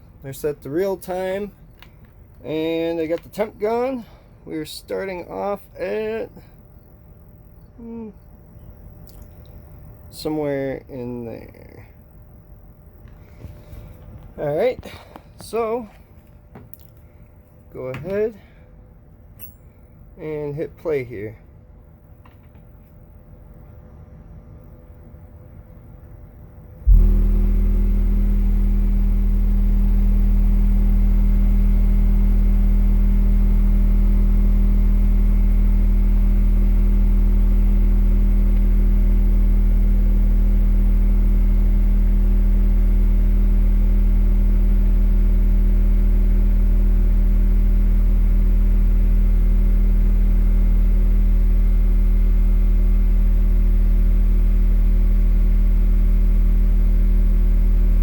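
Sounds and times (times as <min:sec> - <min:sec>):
subwoofer low test tone: 0:26.9 - 0:58.0.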